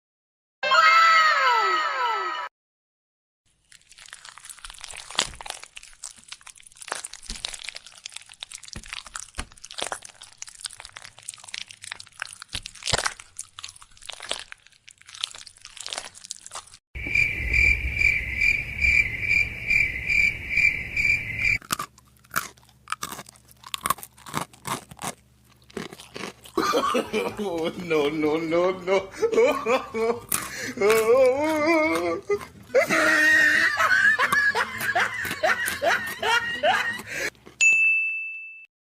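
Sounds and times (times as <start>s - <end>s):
crunchy chewing of chickpeas: 3.5s - 16.8s, 21.6s - 28.3s, 29.7s - 37.6s
high pulsing beep: 17.0s - 21.6s
low hum: 17.0s - 21.6s
low rumble: 17.0s - 21.6s.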